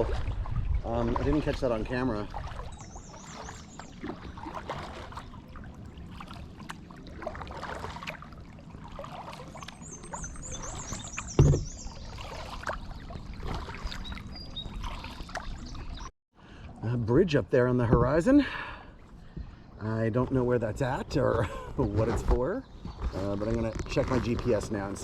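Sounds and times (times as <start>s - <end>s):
paddle splashing in water: 0.0s - 16.1s
loud thump: 11.4s - 11.7s.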